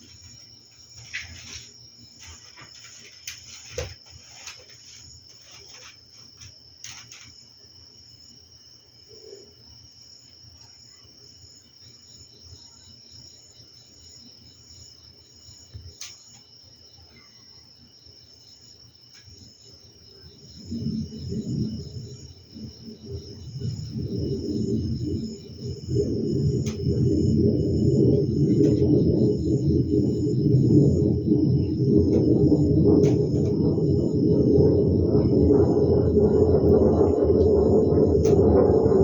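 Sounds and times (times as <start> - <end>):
crickets trilling: 0.0 - 39.0
low steady hum: 20.4 - 39.0.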